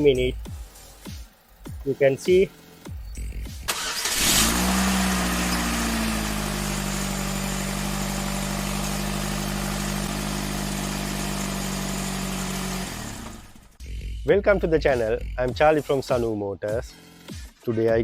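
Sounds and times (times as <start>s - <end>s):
car engine idling: 0.0s - 13.8s.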